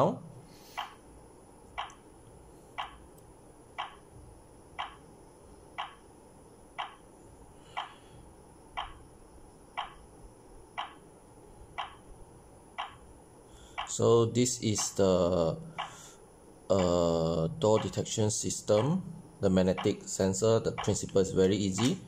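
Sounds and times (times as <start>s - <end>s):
alarm system countdown ticking: 2.8s - 3.1s, 3.7s - 4.1s, 4.8s - 5.1s, 5.8s - 6.1s, 6.8s - 7.1s, 8.7s - 9.1s, 9.7s - 10.1s, 11.7s - 12.1s, 12.8s - 13.1s, 13.7s - 22.0s.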